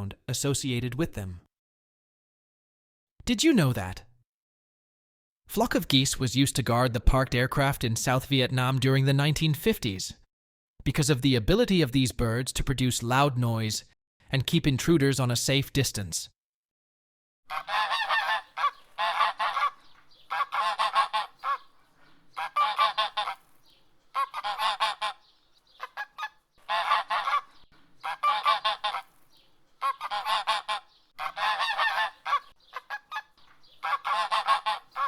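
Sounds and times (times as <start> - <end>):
goose honking: 17.5 - 35.0.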